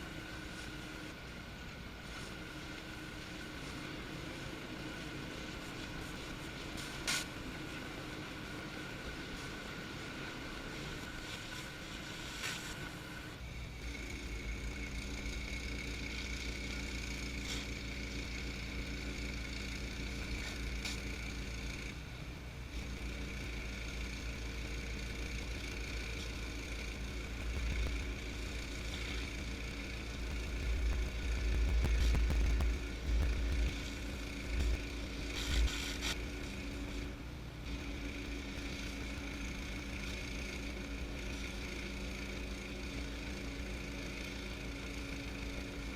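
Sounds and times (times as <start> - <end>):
pressure washer engine running: 13.7 - 22.1, 22.7 - 45.9
deep rumble: 22.6 - 39.4.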